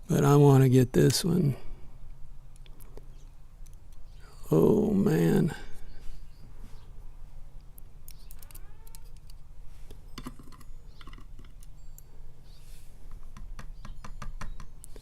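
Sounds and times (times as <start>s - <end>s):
metal tool clicks and taps: 13.1s - 15.0s.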